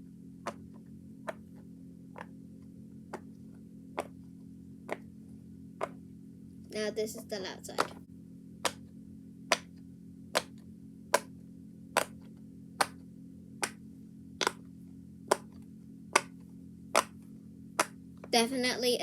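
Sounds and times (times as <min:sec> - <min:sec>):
steady low hum: 0:00.0 - 0:19.0
fidget toy bubbles popping: 0:14.4 - 0:14.6.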